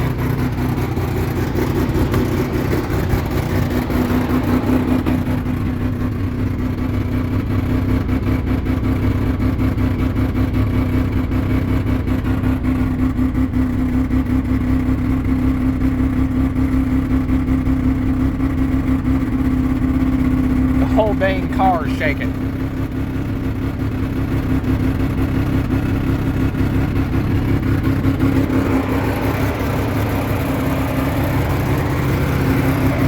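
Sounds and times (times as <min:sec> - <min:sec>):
rotary engine idling roughly: 0:00.0 - 0:33.0.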